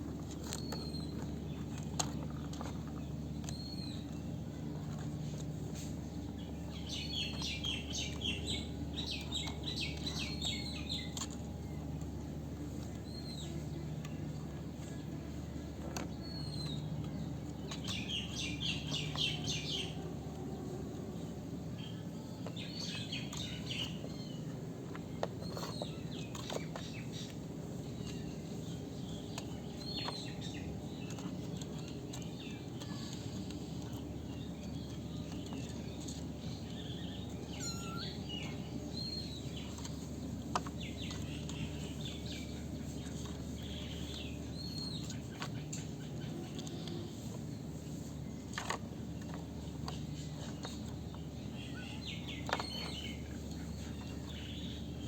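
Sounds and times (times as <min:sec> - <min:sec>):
low background hum: 0:00.0 - 0:55.0
kittens mewing: 0:37.5 - 0:38.2.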